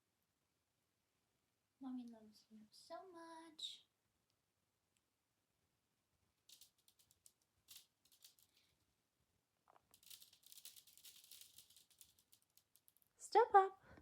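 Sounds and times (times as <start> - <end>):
faint rustling and scratching: 6.4 - 8.9, 9.6 - 13.1.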